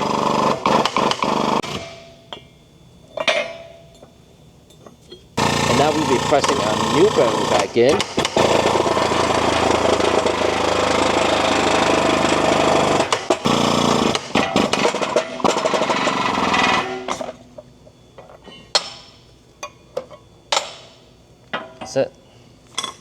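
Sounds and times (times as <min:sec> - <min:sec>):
power tool hammering: 0:00.0 - 0:02.1, 0:05.4 - 0:17.3.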